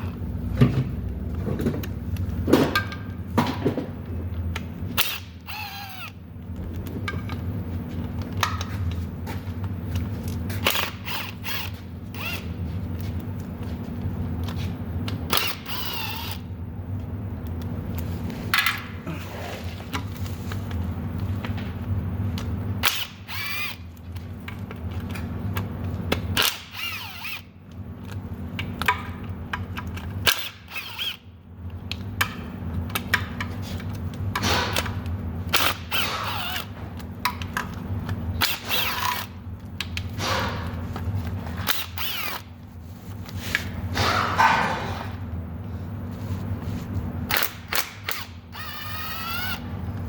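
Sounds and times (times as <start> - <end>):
low hum: 3.9 - 10.4
power tool bursts: 22.8 - 23.8, 35.5 - 36.7.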